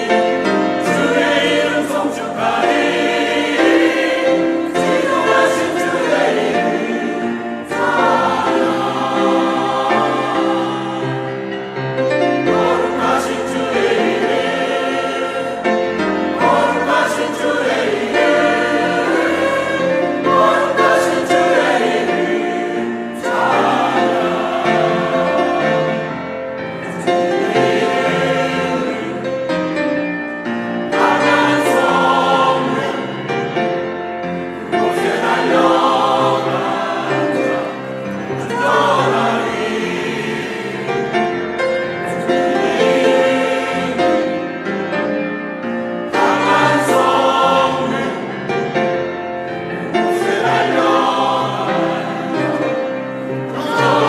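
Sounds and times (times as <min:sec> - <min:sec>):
church choir singing: 0:00.0 - 0:54.0.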